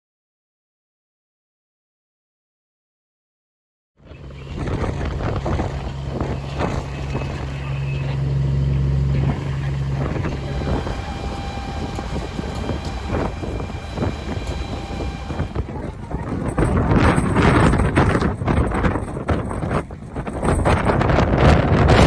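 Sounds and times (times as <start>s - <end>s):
low engine-like hum: 4.0s - 20.5s
wind buffeting microphone: 4.1s - 22.0s.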